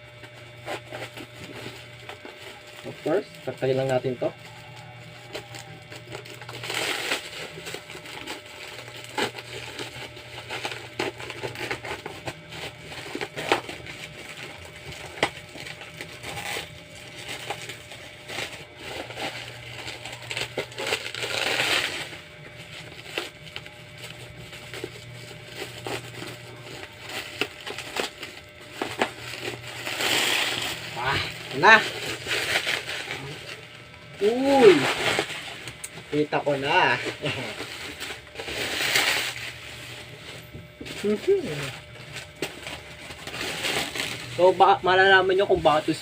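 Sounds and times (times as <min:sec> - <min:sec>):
cardboard crackling and crunching: 0:00.2 - 0:46.0
cardboard tearing: 0:00.2 - 0:46.0.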